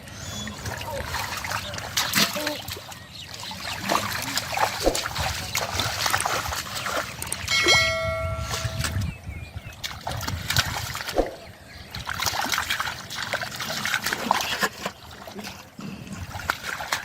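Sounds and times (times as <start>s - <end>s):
water splashing and sloshing: 0.0s - 17.0s
high-pitched tone: 7.5s - 9.1s.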